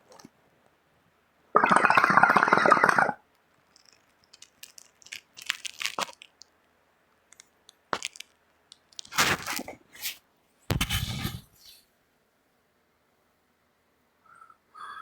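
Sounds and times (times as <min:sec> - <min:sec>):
bong water bubbling: 0:01.6 - 0:03.2.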